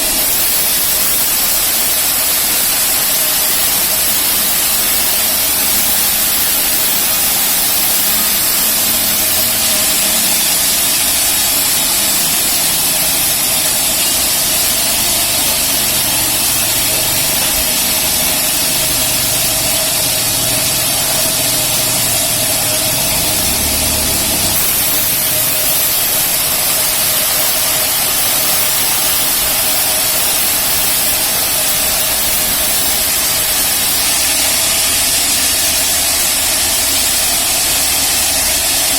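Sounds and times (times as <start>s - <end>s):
band sawmill running with whine: 0.0s - 38.9s.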